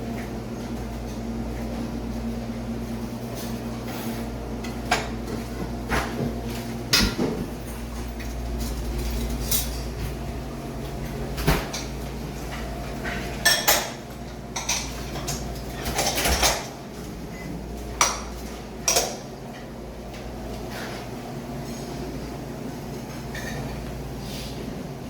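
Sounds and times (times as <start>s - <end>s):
low background hum: 0.0s - 25.0s
dishes and cutlery clinking: 23.3s - 23.8s.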